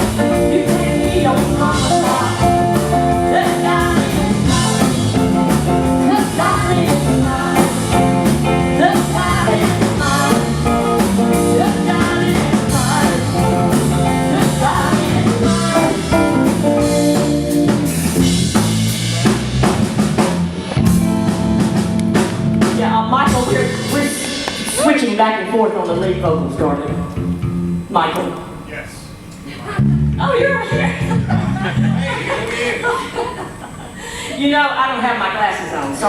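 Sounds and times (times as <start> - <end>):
electric guitar: 0.0 - 24.8
live rock band playing: 0.0 - 25.1
drum kit: 0.0 - 25.2.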